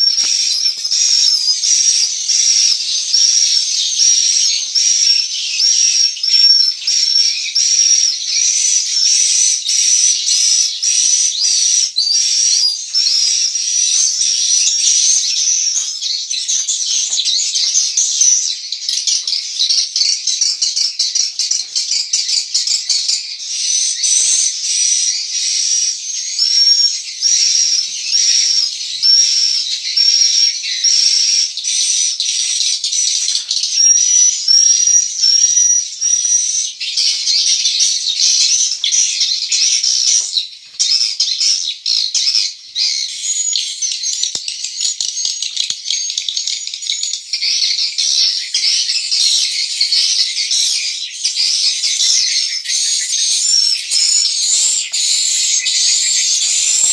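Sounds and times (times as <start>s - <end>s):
swiftlets twittering: 52.7s - 56.9s.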